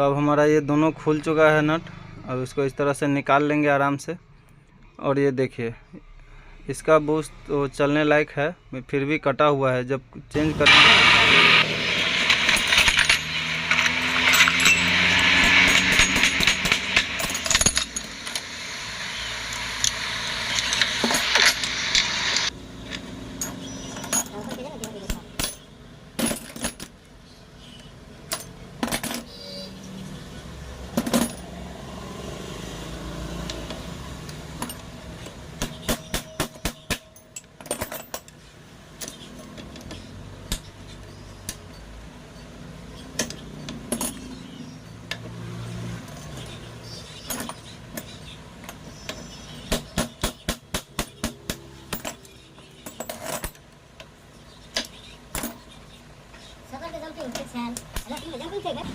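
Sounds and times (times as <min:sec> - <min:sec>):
tools and metal parts clinking: 0:12.2 - 0:18.7, 0:22.9 - 0:29.7, 0:30.9 - 0:31.5, 0:33.6 - 0:56.5.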